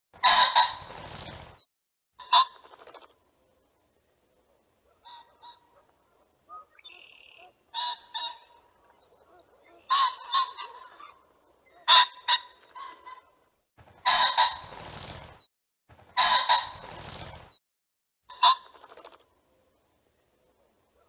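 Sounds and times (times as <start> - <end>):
pheasant calling: 4.9 - 13.4.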